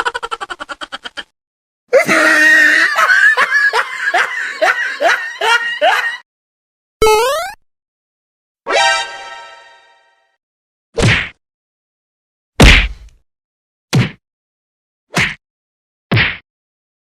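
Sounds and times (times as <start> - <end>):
person laughing: 0.0 - 1.3, 2.0 - 6.2
rapid cartoon laugh: 0.0 - 1.3, 2.0 - 6.2.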